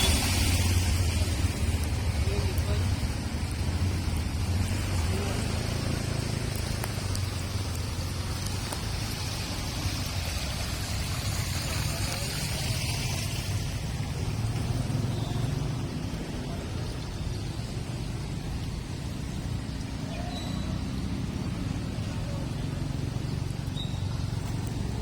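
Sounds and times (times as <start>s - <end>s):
tyre hiss on wet road: 0.0s - 16.4s
vehicle engines passing: 0.0s - 25.0s.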